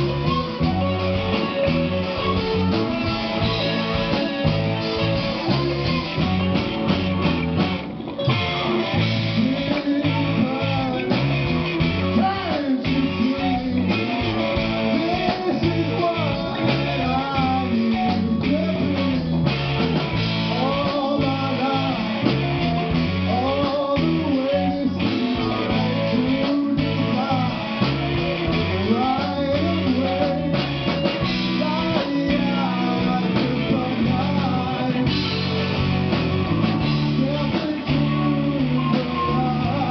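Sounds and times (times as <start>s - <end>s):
electric guitar: 0.0s - 39.9s
rock band playing live: 0.0s - 39.9s.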